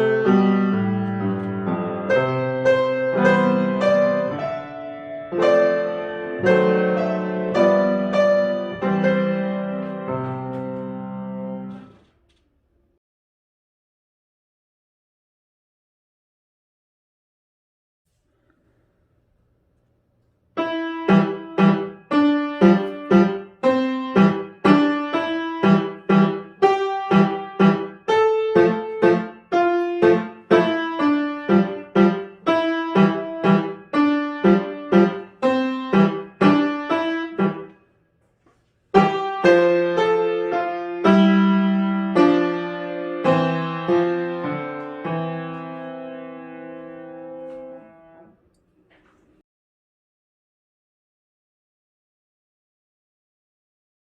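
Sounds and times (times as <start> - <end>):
solo piano: 0.0 - 12.1, 20.6 - 37.8, 38.9 - 48.4.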